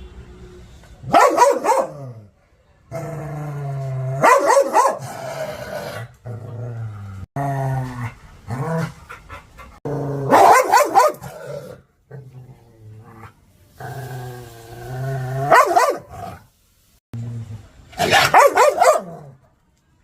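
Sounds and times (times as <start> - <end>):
dog barking aggressively: 1.0 - 2.1, 4.2 - 5.6, 10.2 - 11.6, 15.4 - 16.2, 18.0 - 19.3.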